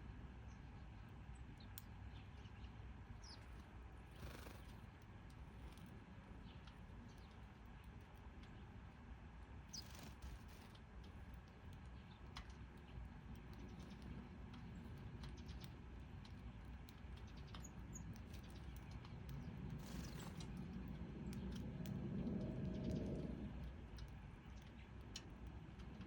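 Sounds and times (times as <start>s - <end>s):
low background rumble: 0.0s - 26.0s
light ticks: 1.6s - 2.0s, 10.6s - 26.0s
sparrow chirps: 1.6s - 4.9s, 9.7s - 26.0s.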